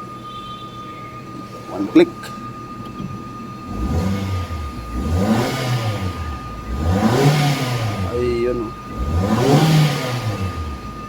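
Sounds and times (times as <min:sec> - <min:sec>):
car engine revving: 0:01.4 - 0:11.0.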